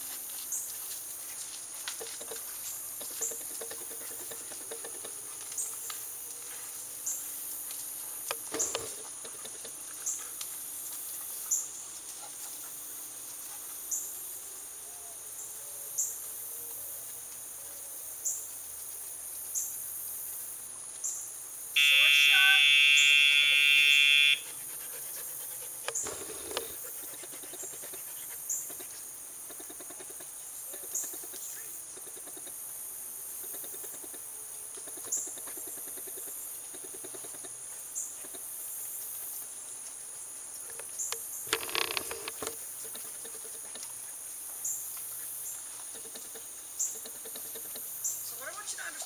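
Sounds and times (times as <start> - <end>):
steady high insect hiss: 0.0 - 49.0
short high insect chirp: 21.0 - 24.5.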